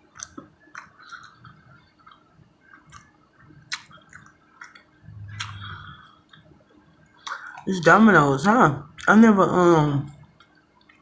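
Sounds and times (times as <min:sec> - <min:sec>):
person chewing with wet smacking: 0:00.0 - 0:07.9, 0:10.1 - 0:11.0
low hum: 0:00.0 - 0:08.1.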